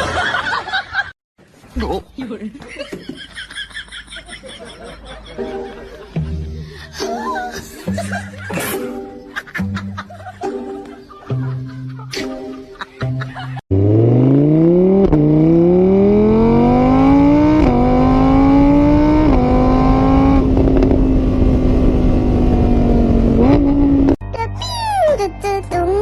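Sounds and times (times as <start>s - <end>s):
vehicle engine accelerating: 13.7s - 24.2s.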